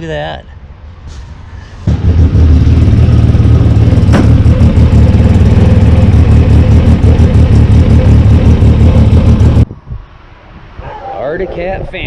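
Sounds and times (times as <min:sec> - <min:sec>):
engine idling: 0:01.9 - 0:09.6.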